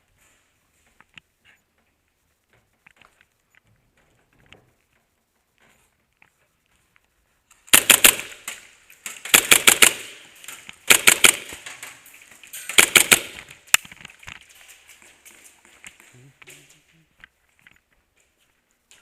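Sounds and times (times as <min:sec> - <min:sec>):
airsoft pistol firing bursts: 0:07.7 - 0:08.5, 0:09.2 - 0:11.7, 0:12.7 - 0:13.6.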